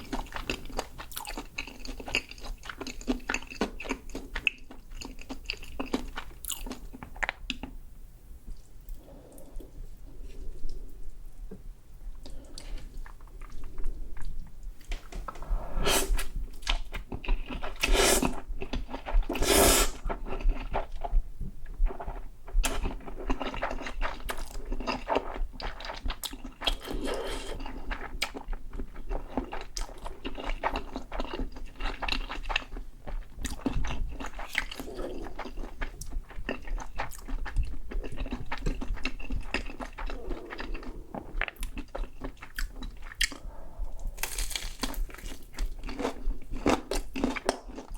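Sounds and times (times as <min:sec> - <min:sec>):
crunchy chewing: 0:00.0 - 0:07.7, 0:21.8 - 0:47.9
crunchy bites: 0:44.1 - 0:47.6.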